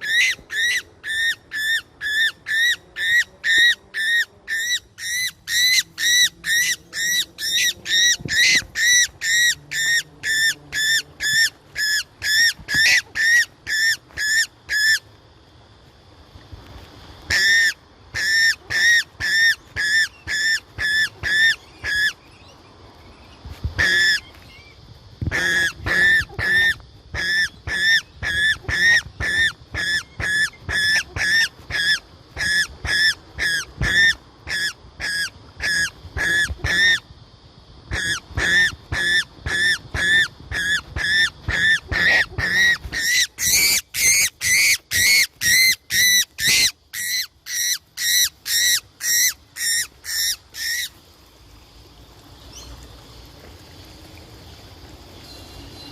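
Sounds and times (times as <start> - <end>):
bird squawking: 38.0 - 50.9.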